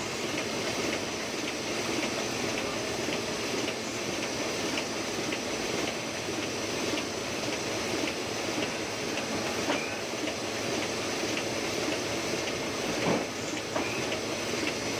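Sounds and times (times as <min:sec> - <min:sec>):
printing press clattering: 0:00.0 - 0:14.9.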